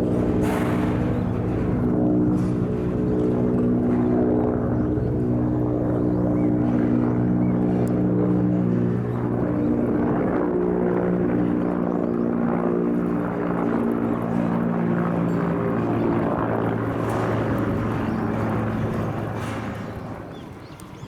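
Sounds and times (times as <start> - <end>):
engine droning: 0.0 - 21.0.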